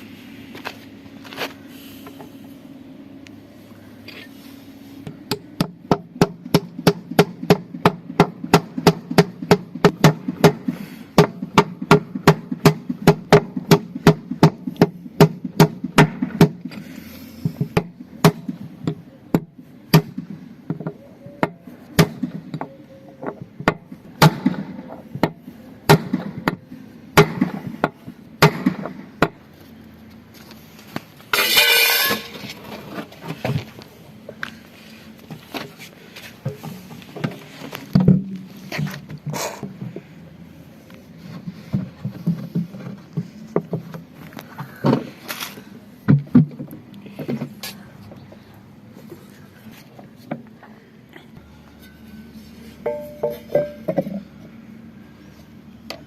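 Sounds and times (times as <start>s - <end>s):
hammer blows on metal: 51.8s - 54.1s.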